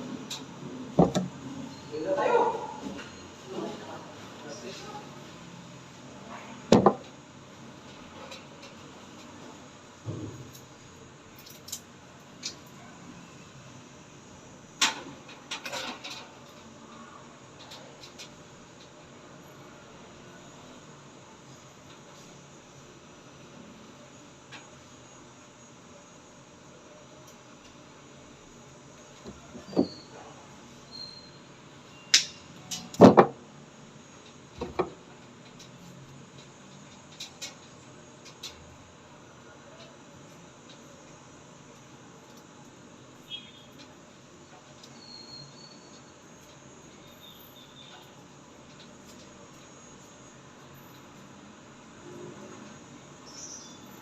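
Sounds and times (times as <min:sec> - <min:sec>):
knocks and clicks of handling: 0:01.0 - 0:01.4
steady hiss: 0:03.1 - 0:54.0.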